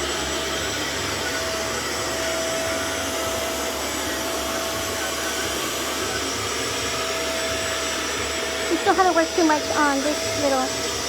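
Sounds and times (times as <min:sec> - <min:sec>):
carpet washer motor whirring: 0:00.0 - 0:11.0.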